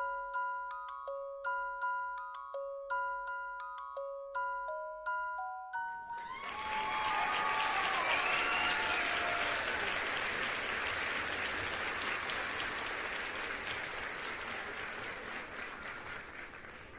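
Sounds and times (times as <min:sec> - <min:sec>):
applause: 0:06.2 - 0:16.9.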